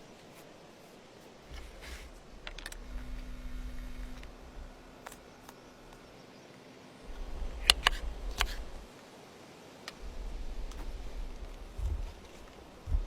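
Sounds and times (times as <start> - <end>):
low rumble: 1.5 - 6.2, 7.1 - 8.9, 10.0 - 13.0.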